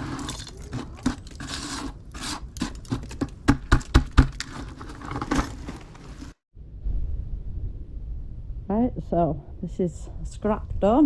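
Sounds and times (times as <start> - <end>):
scrap metal scraping: 0.0 - 3.3.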